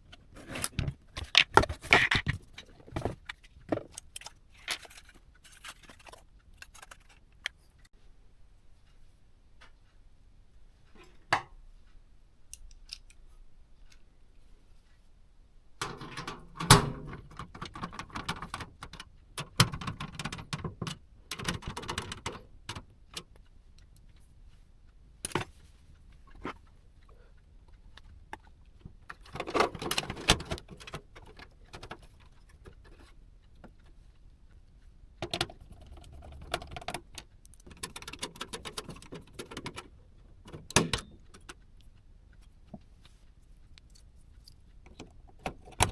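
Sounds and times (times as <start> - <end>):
clicks and knocks on computer hardware: 15.8 - 22.8, 44.9 - 45.9.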